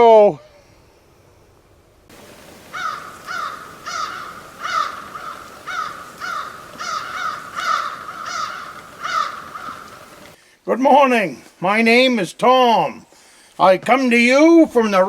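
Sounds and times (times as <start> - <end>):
crows cawing: 2.2 - 10.4.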